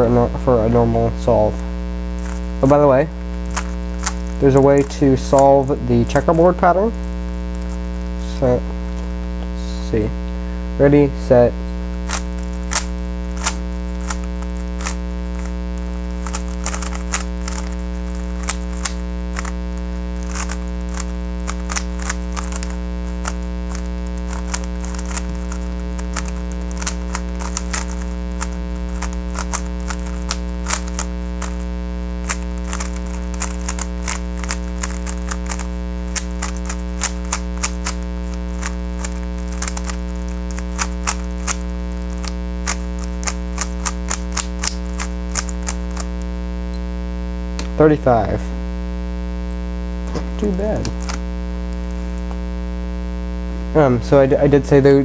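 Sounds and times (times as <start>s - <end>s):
steady electrical hum: 0.0s - 55.0s
speed cube clicking: 1.4s - 6.6s, 7.5s - 7.8s, 11.7s - 46.3s, 50.9s - 51.3s.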